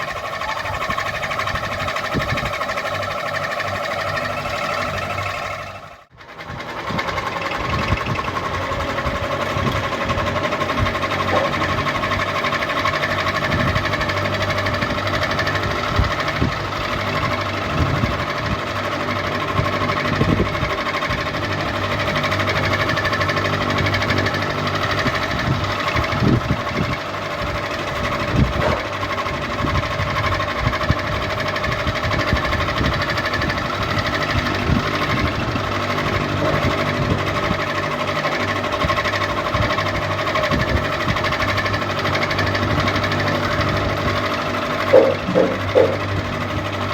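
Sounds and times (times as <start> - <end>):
ceiling fan motor hum: 0.0 - 46.9
low knocking and rattling: 32.3 - 46.9.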